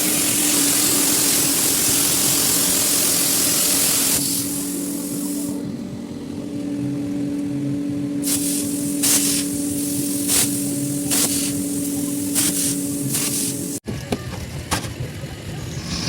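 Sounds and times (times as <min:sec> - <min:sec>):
short gas hisses: 0:00.0 - 0:05.6, 0:08.2 - 0:13.8, 0:15.7 - 0:16.0
steady electrical hum: 0:00.0 - 0:13.8.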